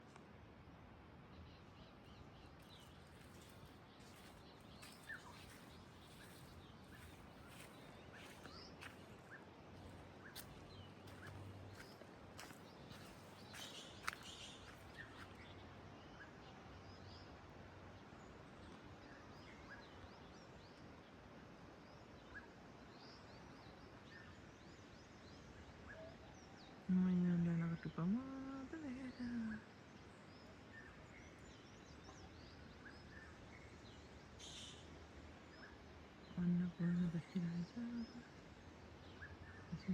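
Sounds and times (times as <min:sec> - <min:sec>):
low background hum: 0:00.0 - 0:39.9
steady outdoor hiss: 0:00.0 - 0:39.9
faint bird chirps: 0:01.4 - 0:09.5, 0:21.9 - 0:39.9.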